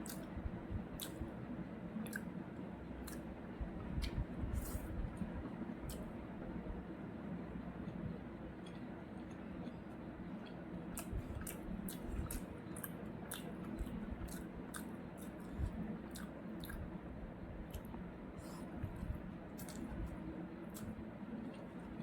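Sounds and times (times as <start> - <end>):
person chewing food: 0.0 - 0.4, 1.0 - 1.3, 2.0 - 2.4, 3.0 - 3.3, 8.6 - 16.9, 17.6 - 22.0.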